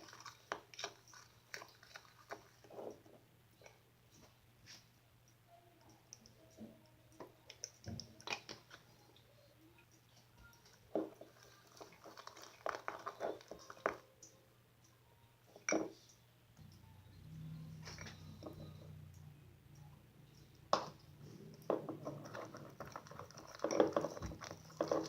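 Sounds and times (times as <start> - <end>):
slime squelching: 0.0 - 3.0, 11.2 - 14.1, 21.5 - 25.0.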